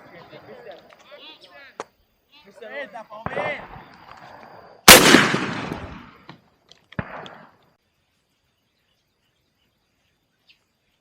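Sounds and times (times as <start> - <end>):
sharp crack with echo: 4.9 - 6.3, 7.0 - 7.6
shotgun blast echo: 4.9 - 6.3, 7.0 - 7.6
faint bird chirps: 7.7 - 11.0.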